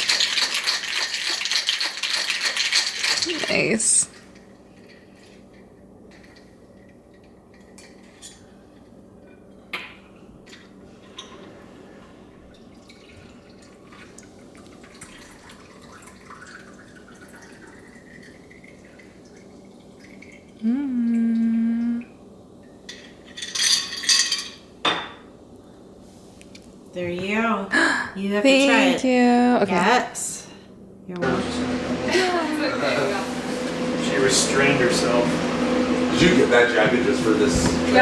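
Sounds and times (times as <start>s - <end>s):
liquid pouring: 0.0s - 5.6s, 10.4s - 21.6s
loud steady low tone: 20.6s - 22.0s, 31.2s - 38.0s
dishes clattering: 22.8s - 25.3s
glassware clinking: 22.9s - 25.3s.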